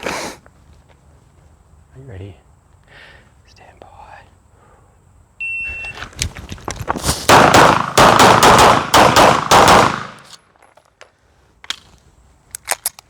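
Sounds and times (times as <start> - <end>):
pistol shots: 7.3 - 10.4.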